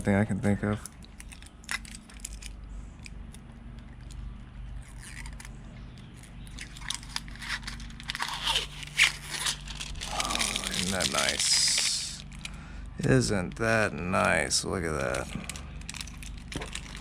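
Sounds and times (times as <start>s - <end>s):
plastic film crackling: 6.4s - 12.6s, 14.8s - 17.0s.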